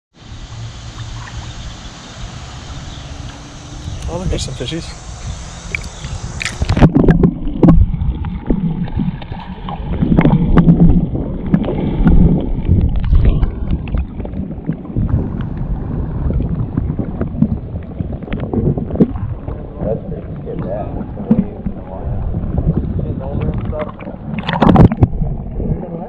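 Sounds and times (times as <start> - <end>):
paddle splashing water: 0.2 - 26.0
wind buffeting microphone: 0.2 - 26.0.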